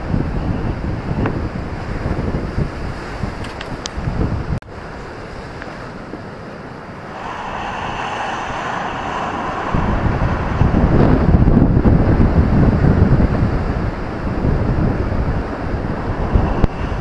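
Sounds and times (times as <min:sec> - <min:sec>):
wind buffeting microphone: 0:00.0 - 0:17.0
ocean surf breaking: 0:04.7 - 0:17.0.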